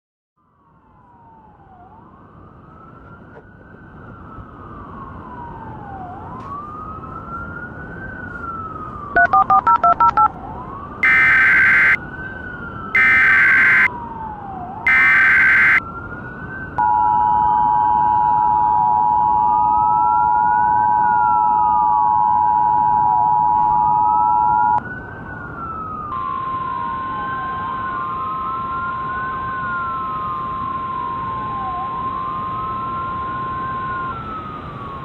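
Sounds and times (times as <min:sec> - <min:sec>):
wailing siren: 0:00.8 - 0:09.2, 0:10.4 - 0:22.9, 0:24.2 - 0:35.0
data tone bursts: 0:11.0 - 0:12.0, 0:13.0 - 0:13.9, 0:14.9 - 0:15.8
touch-tone beeps: 0:11.0 - 0:12.0, 0:13.0 - 0:13.9, 0:14.9 - 0:15.8
two-tone attention signal: 0:11.0 - 0:12.0, 0:13.0 - 0:13.9, 0:14.9 - 0:15.8.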